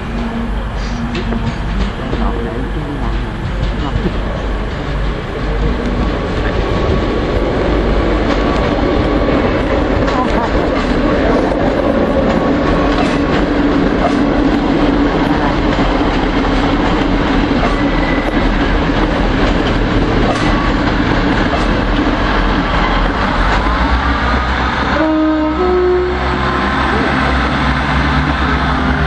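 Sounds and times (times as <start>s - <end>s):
humming tone: 0.0s - 10.4s
train wheels rumbling: 0.0s - 29.0s.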